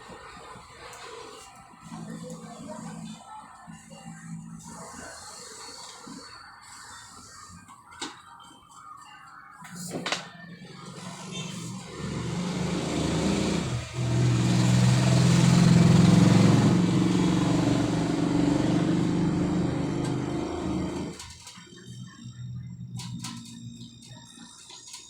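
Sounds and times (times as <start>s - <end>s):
vehicle engine passing by: 10.8s - 21.2s.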